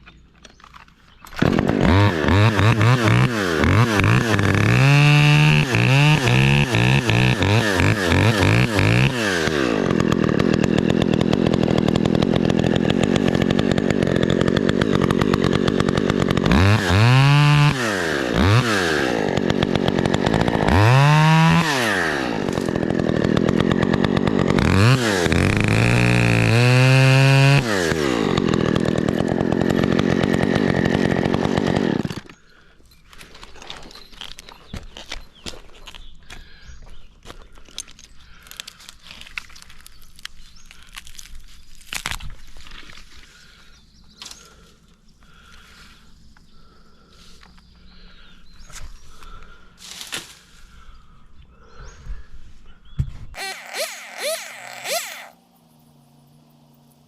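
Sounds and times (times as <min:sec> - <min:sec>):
chainsaw revving: 0:01.3 - 0:32.6, 0:42.7 - 0:51.0, 0:53.3 - 0:57.0.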